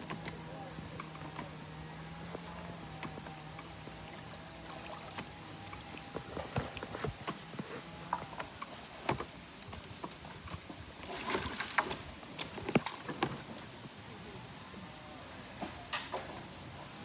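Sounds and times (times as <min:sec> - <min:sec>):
rush of water: 0:04.1 - 0:07.3, 0:09.1 - 0:14.0.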